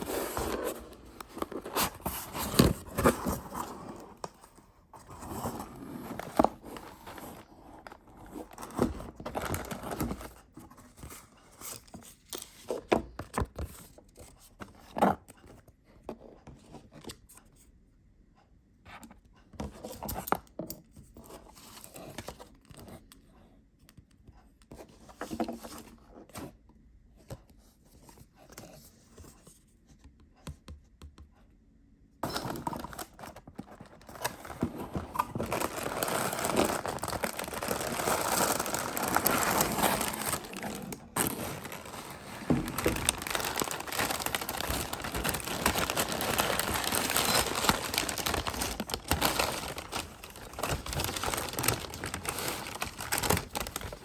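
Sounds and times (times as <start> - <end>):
packaging crinkling: 32.2 - 54.0.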